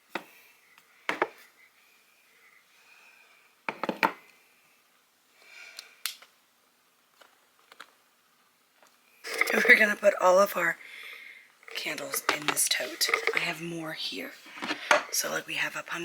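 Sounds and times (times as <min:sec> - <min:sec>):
quiet handling rustle: 0:11.6 - 0:15.4.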